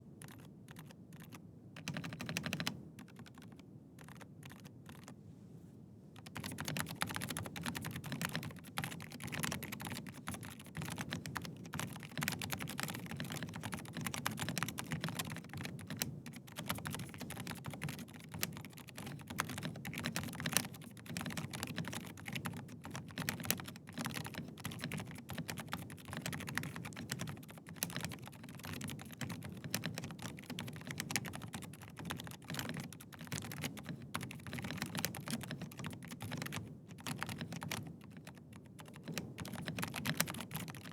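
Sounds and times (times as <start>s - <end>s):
fast typing on mechanical keyboard: 0.2s - 5.2s, 6.2s - 40.9s.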